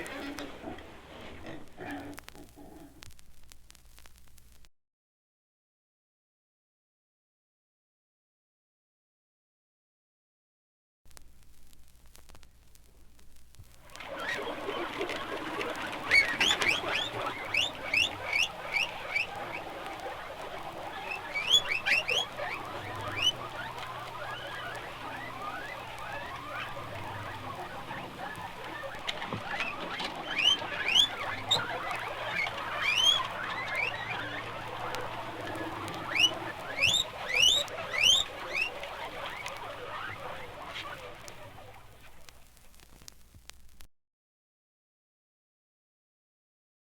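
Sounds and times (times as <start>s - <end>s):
animals chattering: 0.0s - 3.1s, 13.9s - 42.4s
high squeaky chirps: 16.0s - 41.0s.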